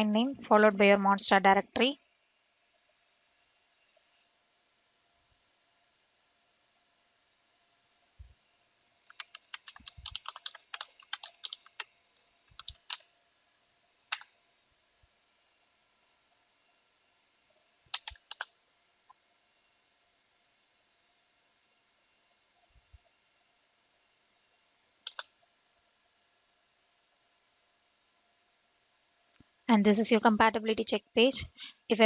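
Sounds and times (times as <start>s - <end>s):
faint steady hiss: 0.0s - 32.0s
typing on a keyboard: 9.0s - 11.9s, 12.5s - 13.1s, 14.1s - 14.3s, 17.9s - 18.5s, 25.0s - 25.3s.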